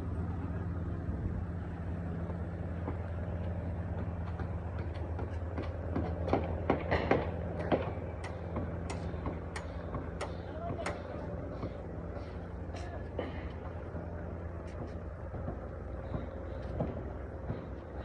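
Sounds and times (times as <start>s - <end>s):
low engine hum: 0.0s - 18.0s
sharp knocks and clicks: 3.9s - 11.8s.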